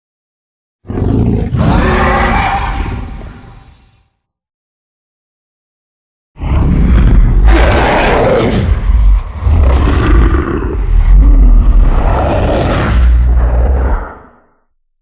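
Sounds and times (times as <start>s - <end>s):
deep growling dinosaur roar: 0.9s - 3.6s, 6.4s - 14.6s.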